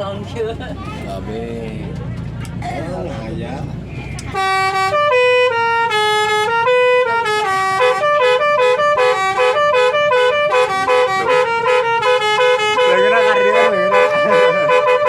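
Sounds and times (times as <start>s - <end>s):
multi-tone horn playing melody: 4.3s - 15.0s.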